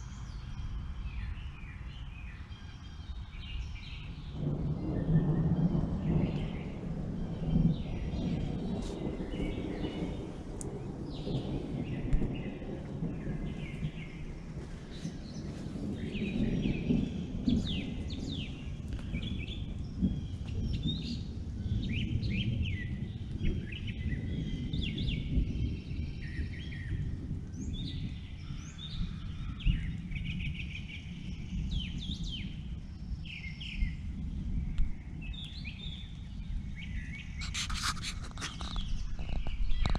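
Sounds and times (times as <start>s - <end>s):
small birds chirping: 0.0s - 39.9s
steady low rumble: 3.4s - 24.4s
rustling: 37.4s - 39.9s.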